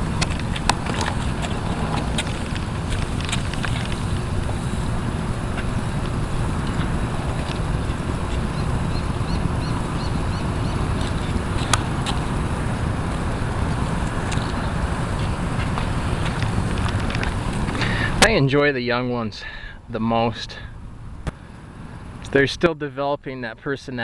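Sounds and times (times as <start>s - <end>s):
low rumble: 0.0s - 19.0s
wind buffeting microphone: 0.0s - 19.2s.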